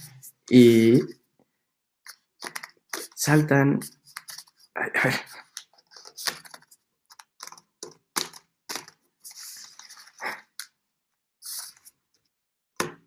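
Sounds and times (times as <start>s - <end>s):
paper rustling: 2.1s - 10.6s.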